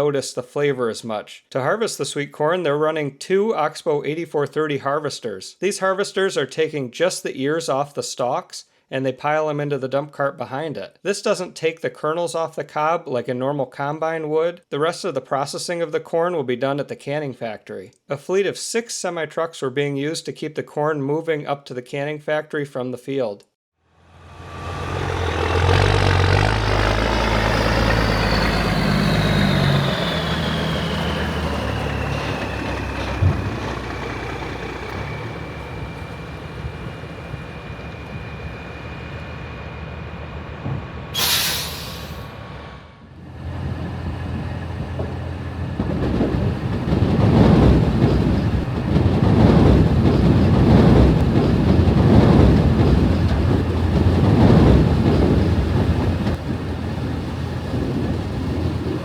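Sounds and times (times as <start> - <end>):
heavy machinery rumbling: 24.0 - 39.7, 42.2 - 59.0
diesel engine whining: 24.0 - 59.0
air-brake hiss: 41.2 - 42.4.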